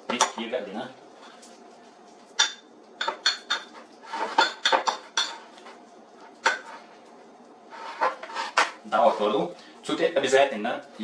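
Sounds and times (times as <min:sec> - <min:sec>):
dishes and cutlery clinking: 0:02.4 - 0:05.8.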